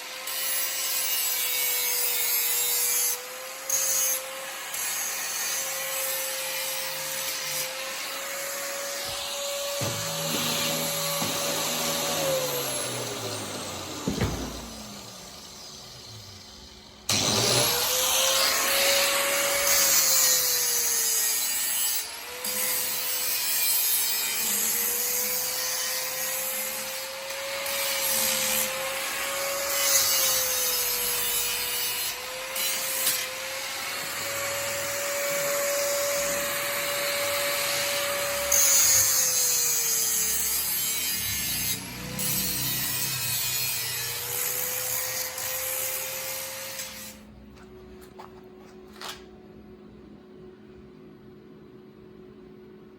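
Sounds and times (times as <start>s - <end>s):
grinder grinding metal: 0.0s - 48.2s
grinder motor winding down: 8.7s - 19.7s, 32.7s - 46.4s.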